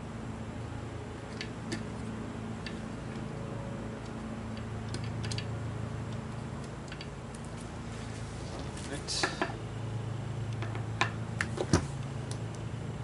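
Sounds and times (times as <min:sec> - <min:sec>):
steady low hum: 0:00.0 - 0:13.0
metal parts clicking and tapping: 0:04.0 - 0:05.5.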